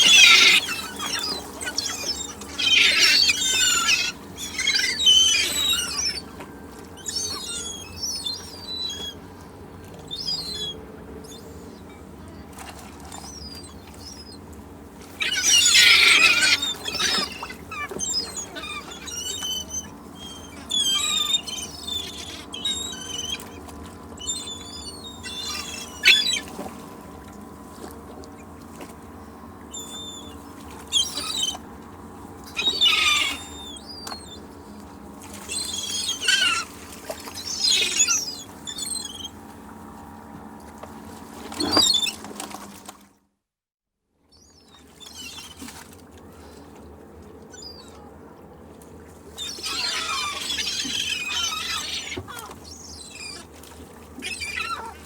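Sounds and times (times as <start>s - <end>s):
seagulls calling: 0.0s - 40.4s, 41.5s - 42.4s, 44.4s - 55.0s
beach ambience: 0.0s - 42.9s.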